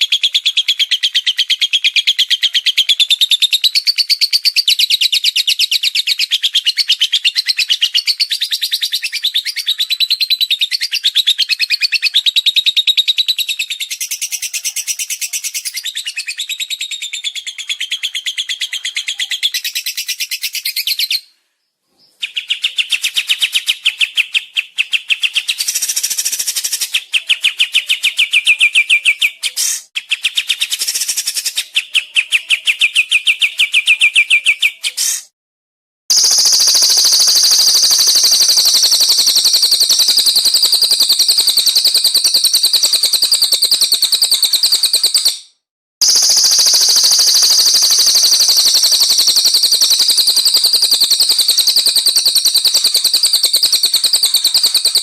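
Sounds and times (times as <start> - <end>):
songbird trilling: 36.1 - 45.4, 46.0 - 55.0.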